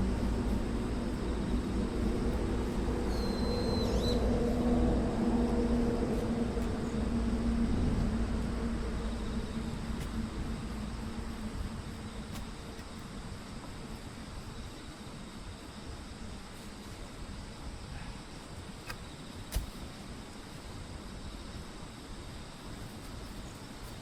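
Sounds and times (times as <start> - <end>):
engine hum: 0.0 - 14.0.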